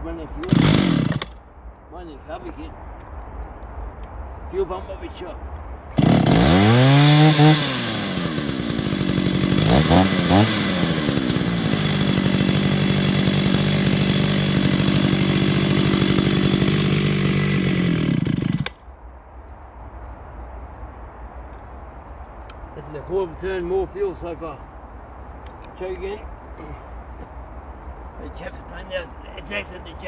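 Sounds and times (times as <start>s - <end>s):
chainsaw revving and idling: 0.4s - 1.3s, 5.9s - 18.8s.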